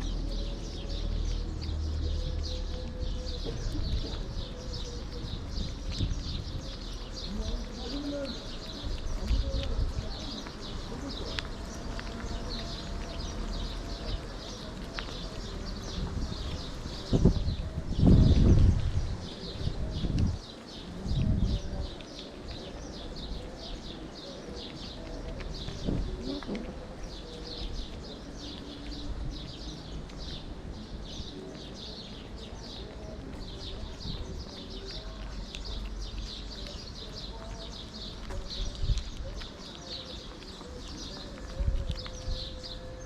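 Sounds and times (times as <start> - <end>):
small birds chirping: 0.0 - 43.0.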